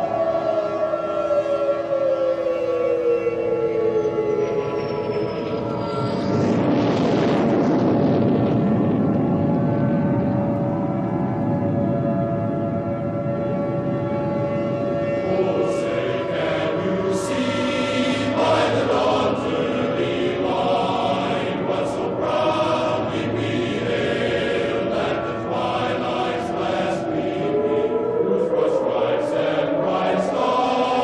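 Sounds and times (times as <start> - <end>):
choir singing an anthem: 15.2 - 31.0.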